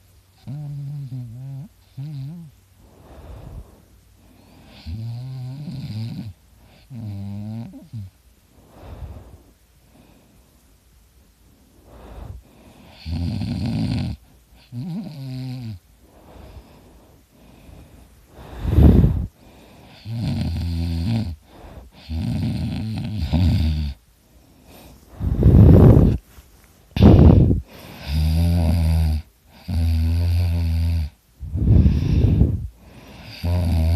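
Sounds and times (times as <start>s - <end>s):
person snoring loudly: 4.6s - 8.1s, 12.0s - 16.6s, 18.3s - 24.0s, 25.2s - 26.2s, 27.0s - 33.9s.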